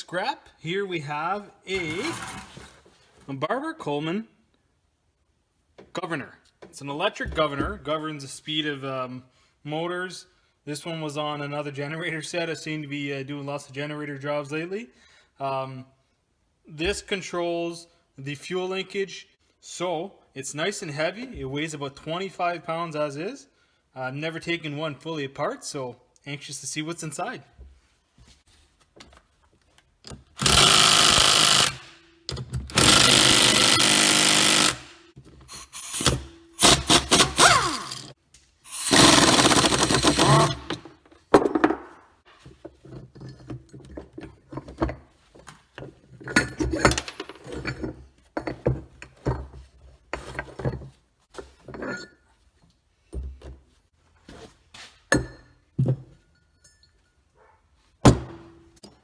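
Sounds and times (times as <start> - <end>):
metal parts clanking and rattling: 1.7 - 2.9, 35.5 - 41.4, 42.4 - 49.6
power tool running: 30.4 - 32.0, 32.7 - 38.1, 38.7 - 40.8.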